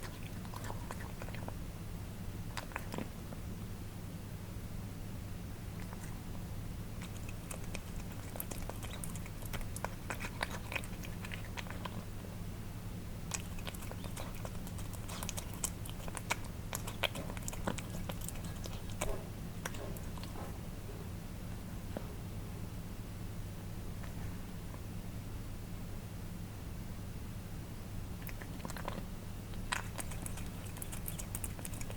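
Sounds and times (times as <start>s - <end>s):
cats chewing and licking: 0.0s - 1.7s, 2.3s - 3.5s, 5.7s - 12.4s, 13.2s - 20.6s, 28.2s - 31.9s
low electrical hum: 0.0s - 31.9s.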